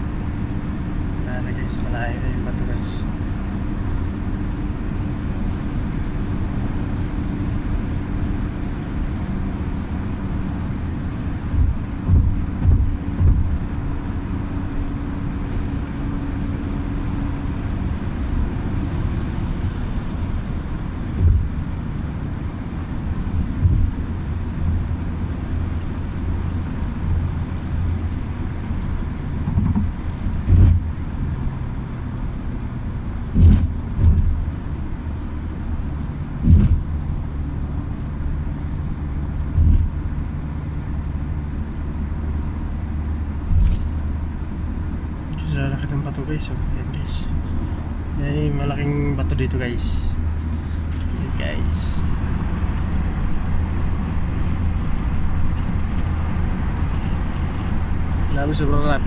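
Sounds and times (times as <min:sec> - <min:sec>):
vehicle engine and road rumble: 0:00.0 - 0:59.0
low thumps from bumps: 0:11.4 - 0:14.0, 0:20.9 - 0:21.9, 0:23.2 - 0:24.7, 0:29.4 - 0:31.4, 0:33.2 - 0:34.5, 0:36.3 - 0:37.2, 0:39.3 - 0:40.1, 0:43.4 - 0:44.0.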